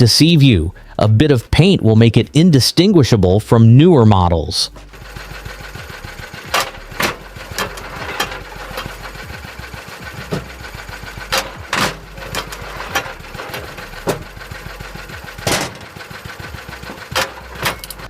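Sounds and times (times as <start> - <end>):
stationary engine running: 4.0 - 18.0.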